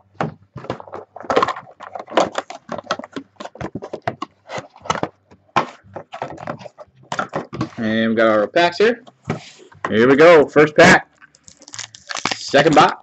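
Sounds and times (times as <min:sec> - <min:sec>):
packaging being ripped open: 0:11.3 - 0:12.9.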